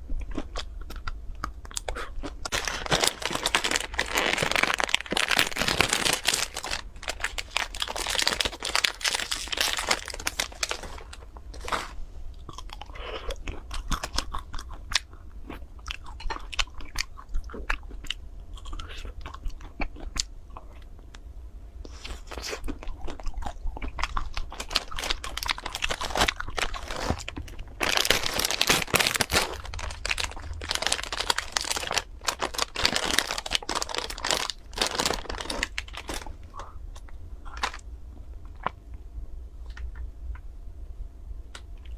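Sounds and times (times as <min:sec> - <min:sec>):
crunching and chewing ice cream bar: 0:00.0 - 0:11.8, 0:12.4 - 0:39.0.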